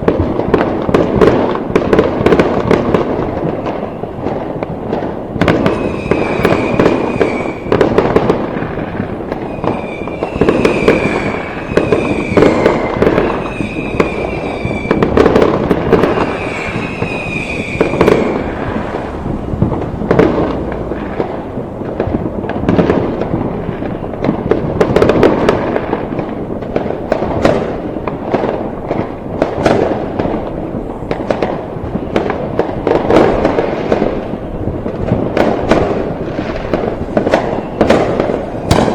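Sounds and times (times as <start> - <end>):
fireworks crackling and banging: 0.0 - 38.9
high whistle-like tone: 5.7 - 7.7, 9.4 - 15.2, 16.0 - 19.4, 37.4 - 38.9.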